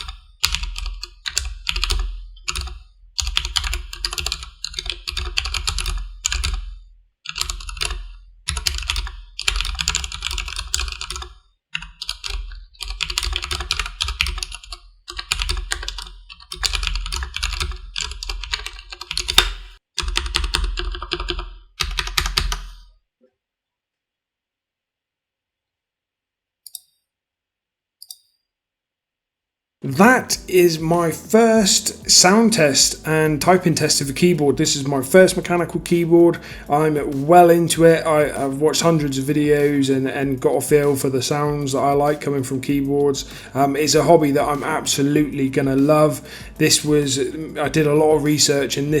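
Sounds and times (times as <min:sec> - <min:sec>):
mechanical keyboard typing: 0:00.0 - 0:06.6, 0:07.3 - 0:22.7.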